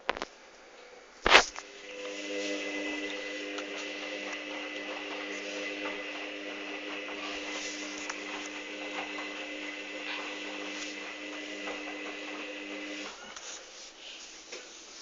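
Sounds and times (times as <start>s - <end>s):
water hissing: 1.6s - 13.3s
washing machine humming: 1.6s - 13.4s.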